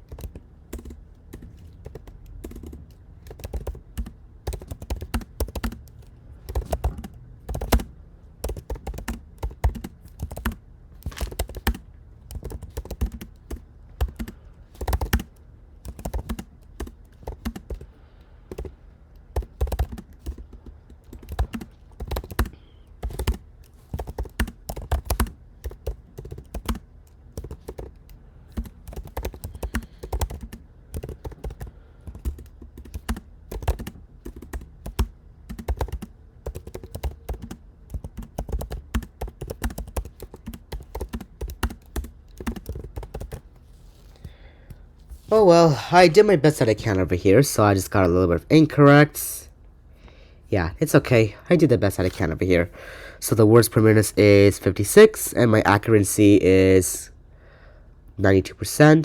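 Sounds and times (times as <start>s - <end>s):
laptop keyboard typing: 0.0s - 45.3s.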